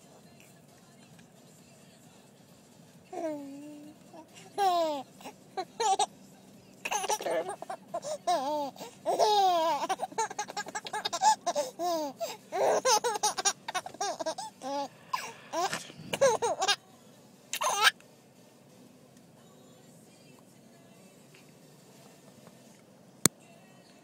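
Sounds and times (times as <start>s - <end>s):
baby laughing and giggling: 3.1s - 6.1s, 6.8s - 16.8s, 17.5s - 18.0s.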